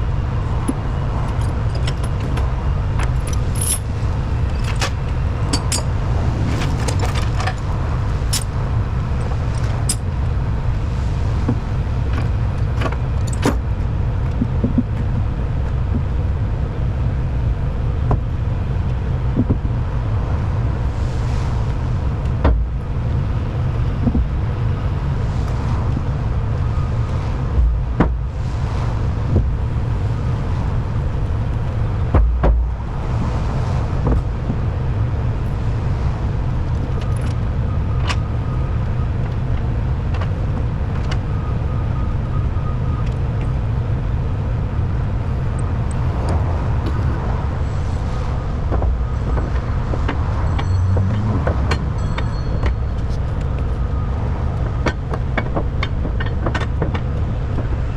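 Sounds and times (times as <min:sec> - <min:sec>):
metallic clinks and knocks: 0:01.3 - 0:02.4, 0:03.0 - 0:06.0, 0:50.4 - 0:53.5.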